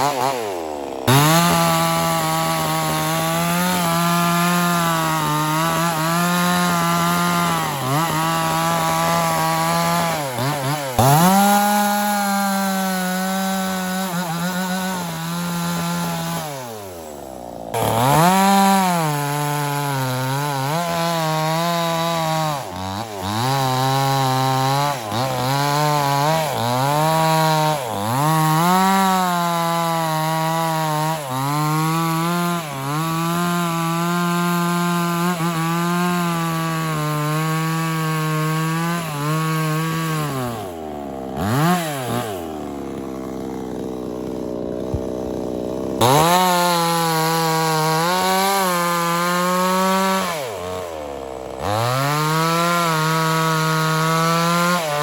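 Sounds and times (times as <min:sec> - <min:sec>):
chainsaw cutting wood: 0:00.0 - 0:55.0.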